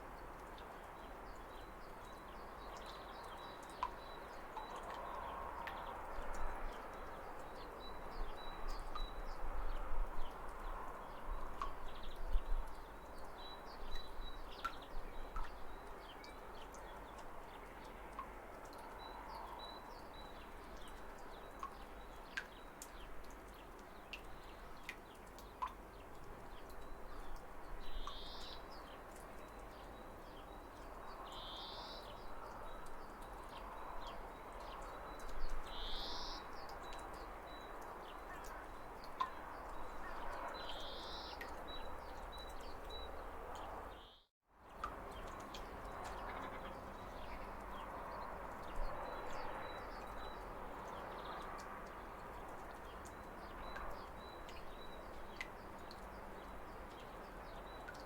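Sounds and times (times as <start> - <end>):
small waterfall splashing: 44.6 - 58.0.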